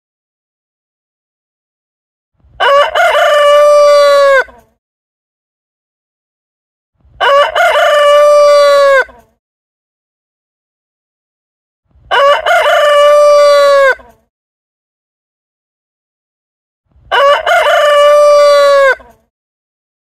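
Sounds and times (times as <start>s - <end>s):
rooster crowing: 2.6s - 4.6s, 7.2s - 9.2s, 12.1s - 14.2s, 17.1s - 19.2s.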